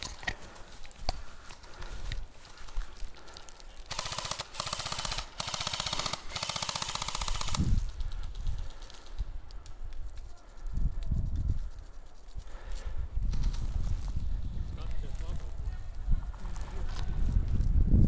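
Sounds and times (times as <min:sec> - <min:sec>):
airsoft rifle firing full auto: 0:03.9 - 0:07.7.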